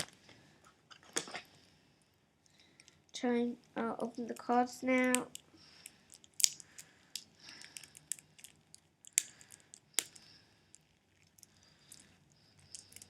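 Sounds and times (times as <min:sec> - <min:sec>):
wrapper crinkling and tearing: 0:04.0 - 0:11.4.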